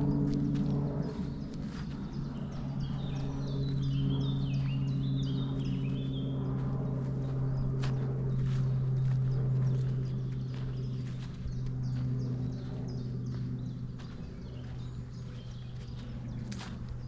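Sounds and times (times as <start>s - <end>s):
footsteps on forest trail: 0.0s - 17.0s
songbird singing: 0.0s - 17.0s
steady low hum: 0.0s - 17.0s.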